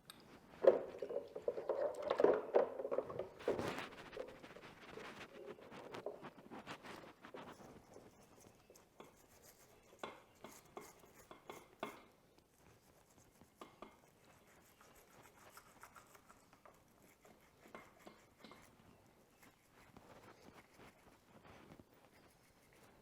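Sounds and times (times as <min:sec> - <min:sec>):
small brush scrubbing metal: 0:01.4 - 0:23.0.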